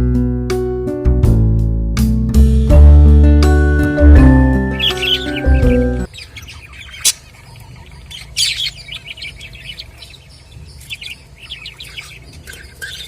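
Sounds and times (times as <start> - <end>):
budgerigars chattering: 4.6 - 13.0.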